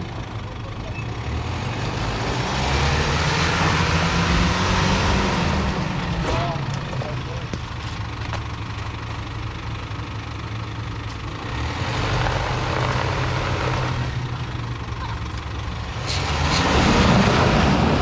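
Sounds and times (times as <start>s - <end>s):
off-road vehicle engine revving: 0.0s - 8.6s, 11.3s - 18.0s.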